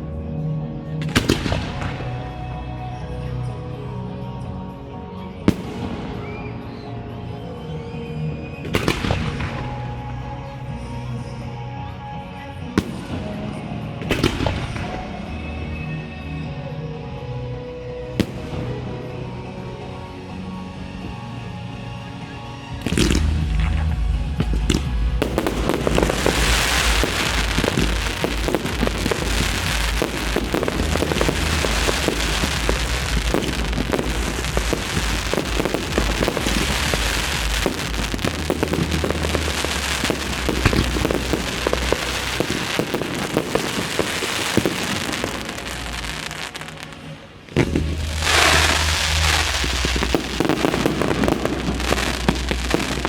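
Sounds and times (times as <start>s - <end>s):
music with steady bass: 0.0s - 53.0s
fireworks popping and crackling: 1.0s - 2.2s, 14.0s - 15.1s, 22.8s - 53.0s.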